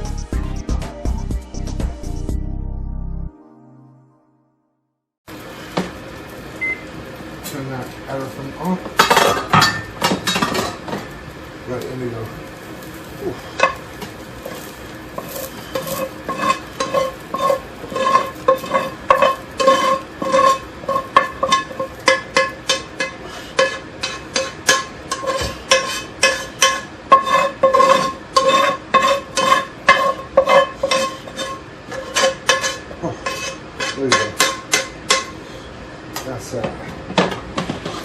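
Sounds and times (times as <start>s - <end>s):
metal spoon clanking in metal pan: 8.9s - 11.0s, 13.5s - 13.8s, 14.5s - 35.4s.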